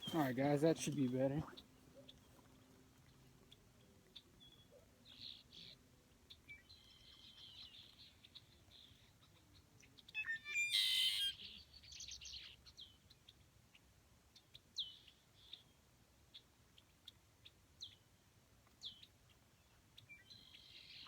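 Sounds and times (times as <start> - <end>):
songbirds chirping and whistling: 0.0 - 18.1, 18.7 - 21.0.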